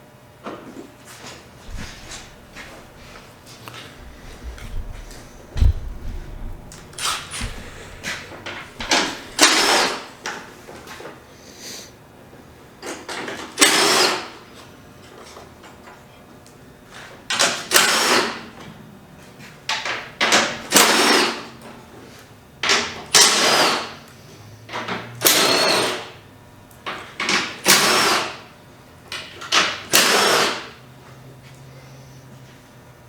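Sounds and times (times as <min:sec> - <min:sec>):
power tool running in bursts: 0:06.9 - 0:10.1, 0:29.9 - 0:30.7.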